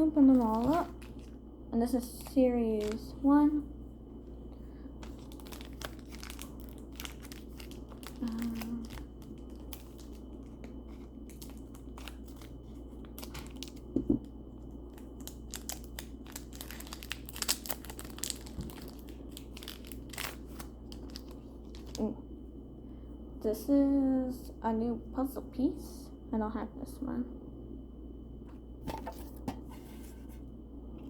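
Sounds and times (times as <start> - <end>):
card pack wrappers crinkling: 0.2 - 1.4, 2.0 - 3.3, 5.0 - 14.0, 14.9 - 22.1.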